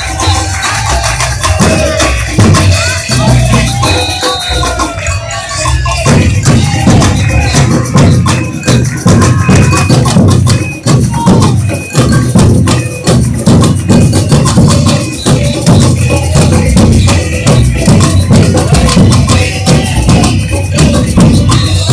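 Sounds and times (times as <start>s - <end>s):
deep bass drums beating: 0.0s - 21.9s
shakers: 0.0s - 21.9s.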